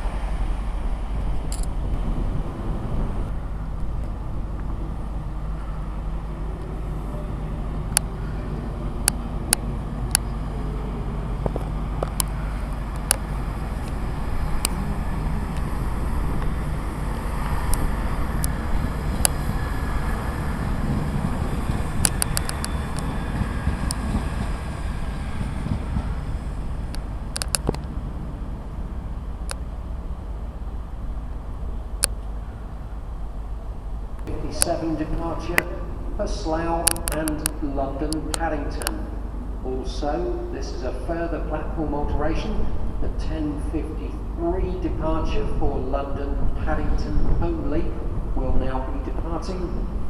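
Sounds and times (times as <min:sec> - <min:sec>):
train rumbling: 0:00.0 - 0:50.0
sharp clicks: 0:11.5 - 0:14.0, 0:22.0 - 0:23.1, 0:26.9 - 0:27.9, 0:36.8 - 0:37.6.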